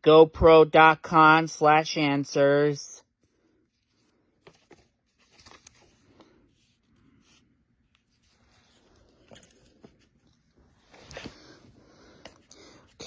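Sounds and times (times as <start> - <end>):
paper rustling: 3.7 - 13.0.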